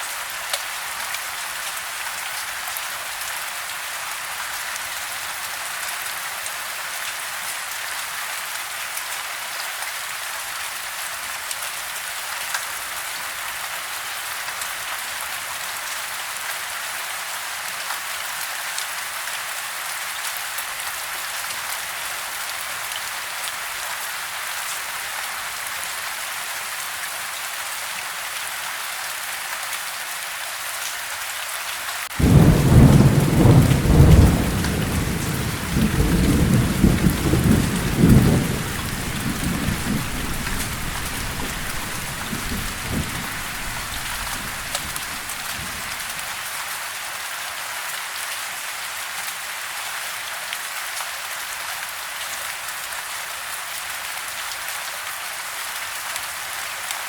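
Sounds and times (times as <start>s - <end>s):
soft rain on a house: 0.0s - 57.0s
deep thunder rumble: 32.2s - 46.1s.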